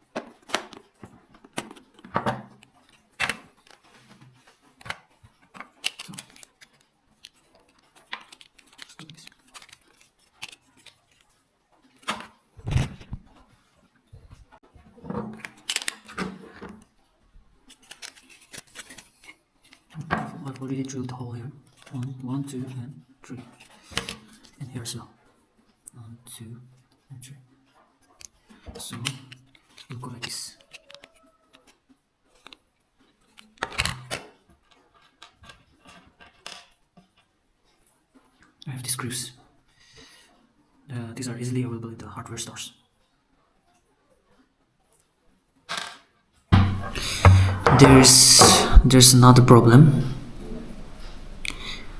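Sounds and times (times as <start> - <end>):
plastic clatter: 0.0 - 11.3, 14.9 - 16.9
plastic parts clicking and knocking: 0.0 - 11.3, 15.0 - 16.9, 17.6 - 20.4, 46.6 - 49.0
handling knocks clicks and rustles: 46.6 - 51.9
heavy thump: 46.6 - 51.9.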